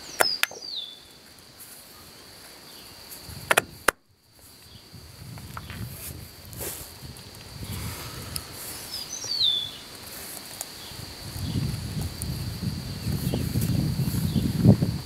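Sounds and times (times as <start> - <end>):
falling bird chirp: 0.0 - 1.2, 7.6 - 10.0
cricket trill: 0.0 - 15.0.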